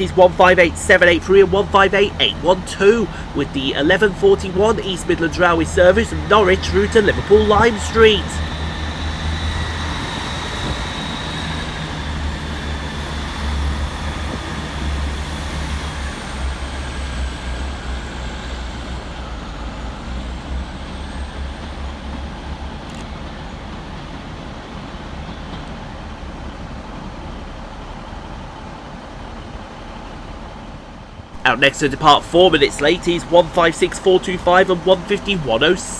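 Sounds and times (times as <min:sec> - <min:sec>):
faint high whine: 0:00.0 - 0:14.8
diesel train engine drone: 0:00.0 - 0:22.1, 0:31.4 - 0:35.9.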